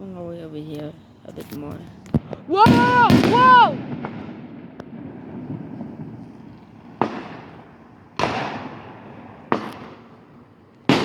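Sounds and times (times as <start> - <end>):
fireworks bangs echoing: 0.8 - 11.0.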